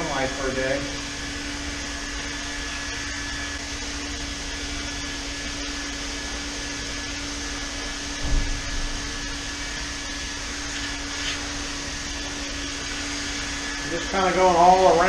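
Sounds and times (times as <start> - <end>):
heat gun fan humming: 0.0 - 15.0
low thump: 8.2 - 9.2.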